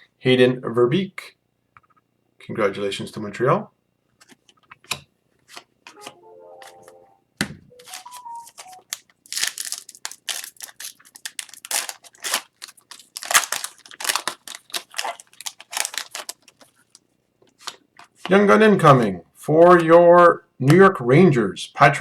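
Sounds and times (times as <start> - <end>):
foil wrapper crinkling and tearing: 7.8 - 18.1
cards being handled: 7.8 - 18.3.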